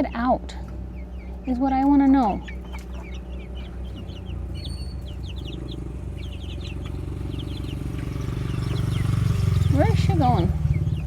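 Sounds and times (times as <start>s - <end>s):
baby chicks peeping: 0.0s - 11.0s
small engine running: 2.6s - 11.0s.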